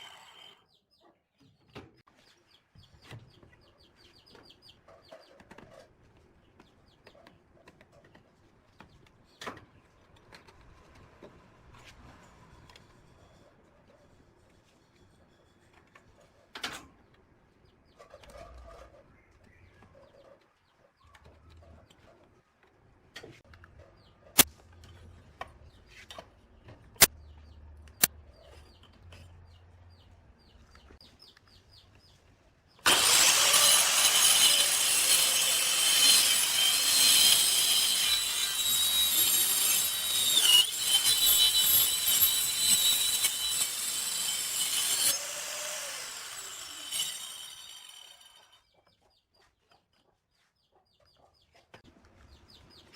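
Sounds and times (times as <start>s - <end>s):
angle grinder cutting wood: 0.0s - 0.6s, 32.8s - 48.6s.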